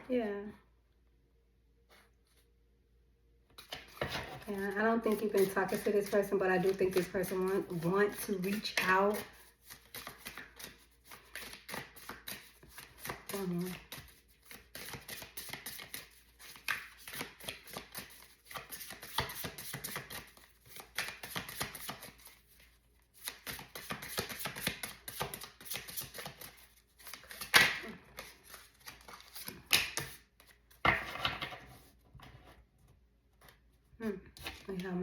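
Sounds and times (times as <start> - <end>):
cards being shuffled: 3.6 - 30.8.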